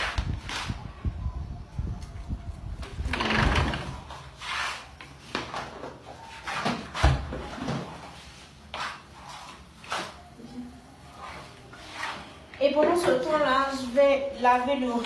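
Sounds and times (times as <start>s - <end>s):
kitchen scrapes and rustling: 3.9s - 5.7s, 11.2s - 12.5s.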